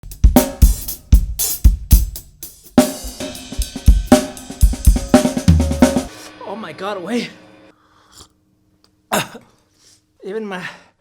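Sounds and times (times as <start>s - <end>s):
drum kit played hard: 0.0s - 7.7s.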